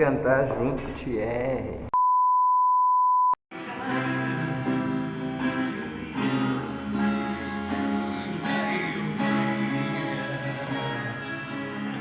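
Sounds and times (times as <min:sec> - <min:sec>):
strummed guitar chords: 0:03.5 - 0:12.0.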